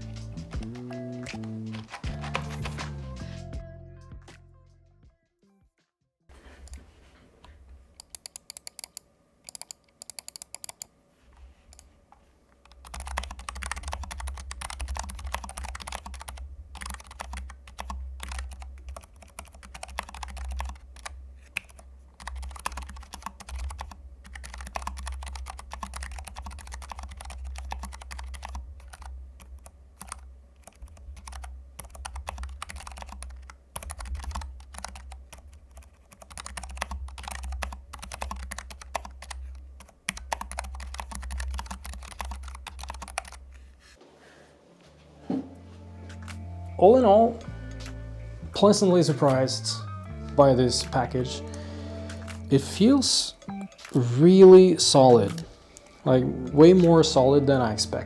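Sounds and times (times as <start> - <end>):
mechanical keyboard typing: 6.6 - 10.9, 12.6 - 43.8, 46.2 - 46.5, 50.8 - 58.0.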